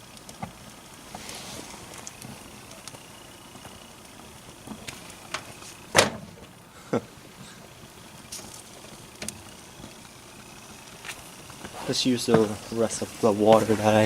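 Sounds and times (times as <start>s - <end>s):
microwave hum: 0.0s - 14.0s
sharp popping and crackling: 0.0s - 14.0s.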